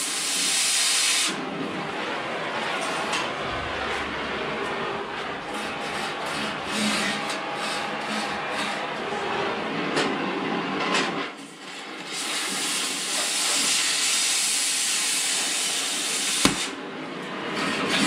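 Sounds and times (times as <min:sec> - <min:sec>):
cutting torch hissing: 0:12.1 - 0:16.8
sharp pop: 0:16.4 - 0:16.8.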